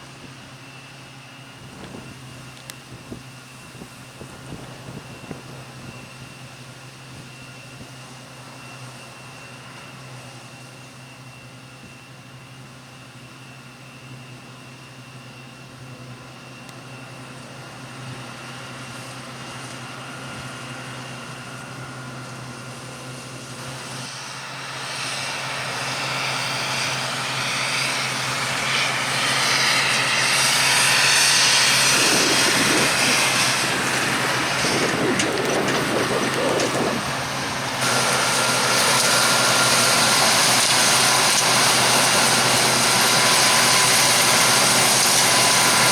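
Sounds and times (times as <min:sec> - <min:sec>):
harvester engine running: 0:18.4 - 0:45.9.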